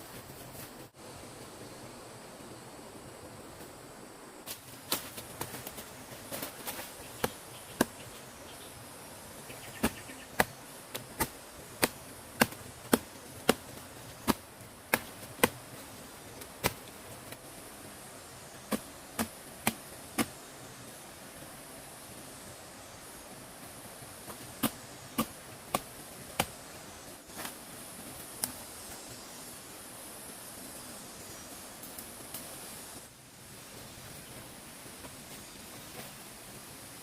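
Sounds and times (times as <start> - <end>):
insect drone: 0.0 - 37.0
blade chopping bamboo: 9.8 - 15.7.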